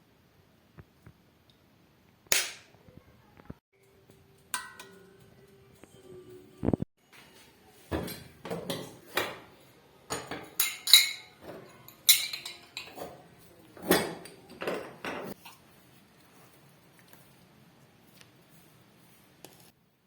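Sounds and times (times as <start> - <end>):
kitchen objects clattering: 7.8 - 15.6.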